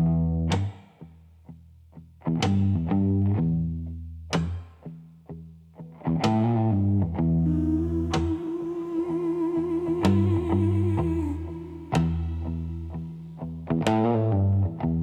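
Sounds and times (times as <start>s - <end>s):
bass line: 7.3s - 13.7s
held tone: 7.4s - 13.4s.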